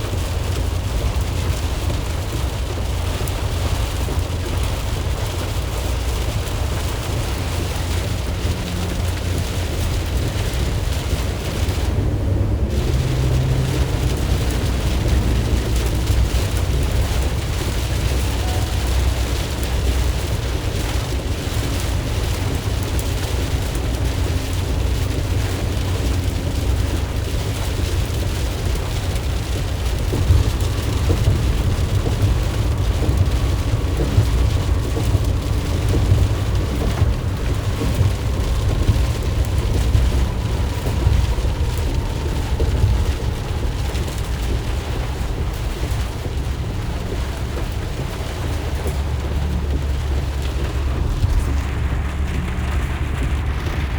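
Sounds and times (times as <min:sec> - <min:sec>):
heavy rain on a vehicle: 0:00.0 - 0:53.9
van engine and tyres rumbling: 0:00.0 - 0:53.9
faint whine falling in pitch: 0:18.4 - 0:19.6.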